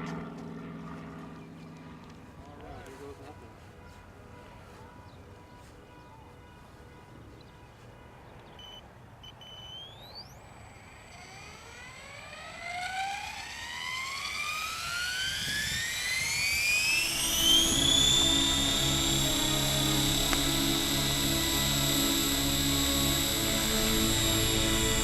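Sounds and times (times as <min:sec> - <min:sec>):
low rotor hum: 0:00.0 - 0:25.0
electric motor whine rising: 0:08.6 - 0:25.0.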